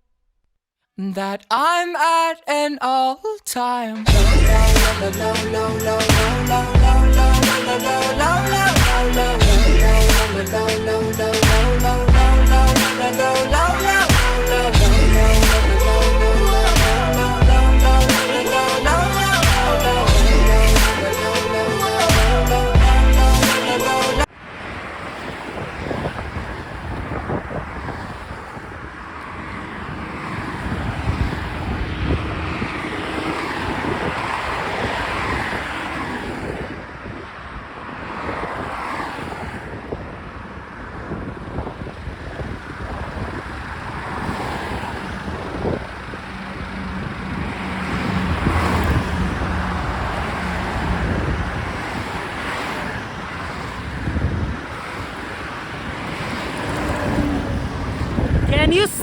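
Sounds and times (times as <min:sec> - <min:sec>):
road traffic noise: 0:04.0 - 0:59.0
wind gusting over microphone: 0:24.3 - 0:59.0.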